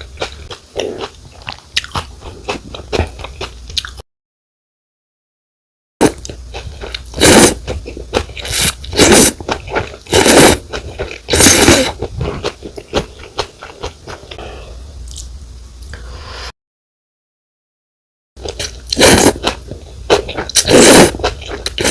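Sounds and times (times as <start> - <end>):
noodles being slurped: 6.6 - 13.9, 18.5 - 21.9.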